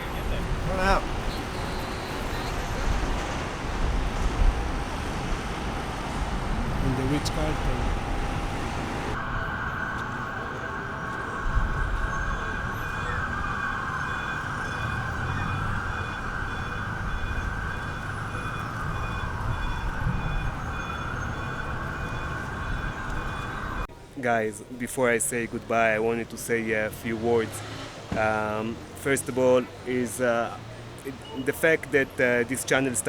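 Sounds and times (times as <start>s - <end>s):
emergency siren wailing: 0.0s - 23.9s
street traffic rumble: 0.0s - 33.0s.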